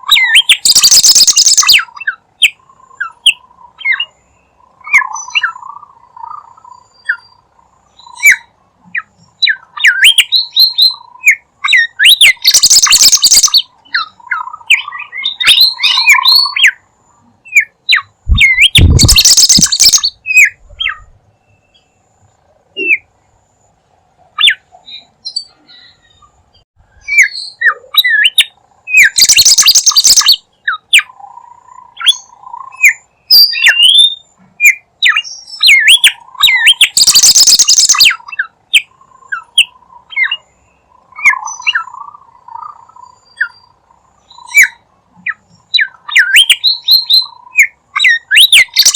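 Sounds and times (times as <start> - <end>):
bird chirping and whistling: 0.0 - 4.2, 8.0 - 16.8, 17.5 - 21.1, 27.0 - 31.1, 32.0 - 40.5, 44.3 - 48.9.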